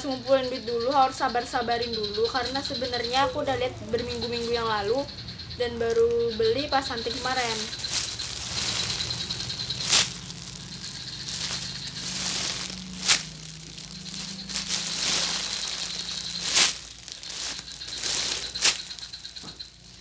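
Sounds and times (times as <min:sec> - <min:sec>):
sharp crackles: 0:00.0 - 0:20.0
squishy toy crinkling: 0:07.0 - 0:20.0.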